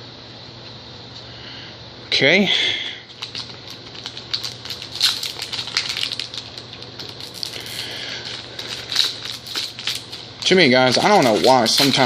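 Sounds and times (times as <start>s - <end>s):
foil wrapper crinkling: 3.1s - 12.0s.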